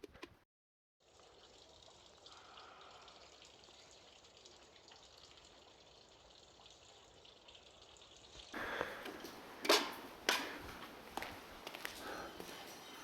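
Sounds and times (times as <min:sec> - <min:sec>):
faint steady hiss: 0:08.6 - 0:13.0
footsteps crunching on snow: 0:08.6 - 0:13.0.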